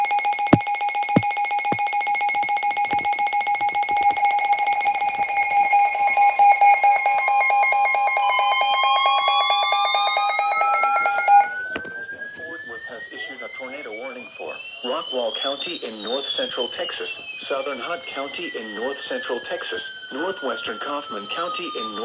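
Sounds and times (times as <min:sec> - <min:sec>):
weather radio alarm tone: 0:00.0 - 0:22.0
thumps: 0:00.5 - 0:04.3.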